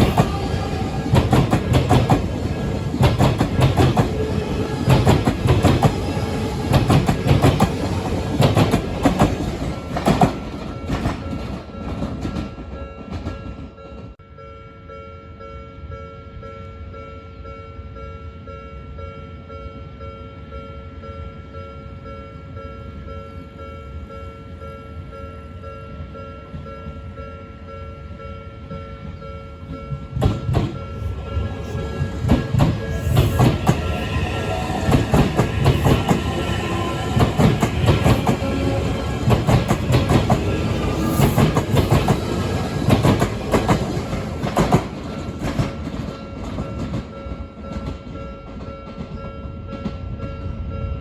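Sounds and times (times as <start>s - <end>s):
train wheels clacking on rails: 0.0s - 14.2s, 29.1s - 50.4s.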